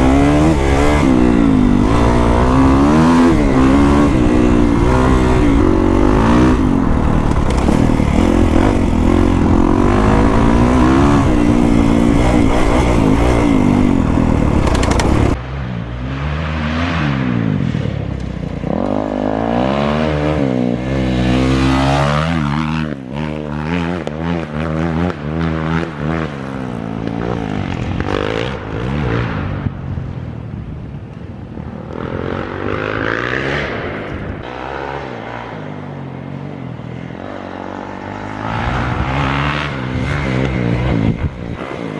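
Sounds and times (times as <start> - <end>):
dirt bike revving: 0.0 - 15.4, 16.1 - 29.8, 31.9 - 41.9
wind noise: 0.0 - 15.9, 26.6 - 34.5, 38.4 - 41.9.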